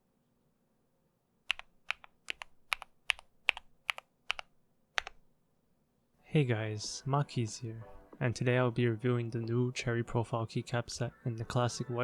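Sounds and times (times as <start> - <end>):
mechanical keyboard typing: 1.5 - 5.2.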